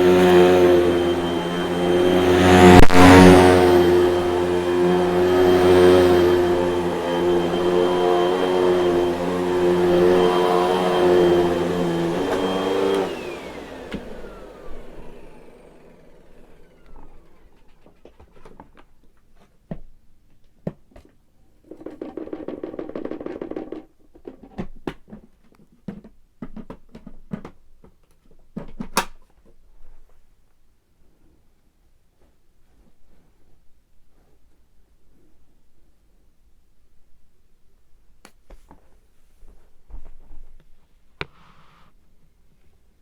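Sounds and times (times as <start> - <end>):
vacuum cleaner motor running: 0.0 - 18.2.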